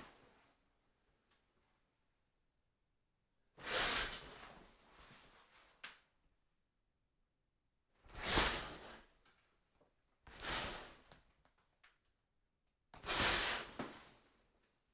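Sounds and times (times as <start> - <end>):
shower curtain swishing on rod: 8.1 - 9.1, 10.3 - 11.2, 13.0 - 14.2.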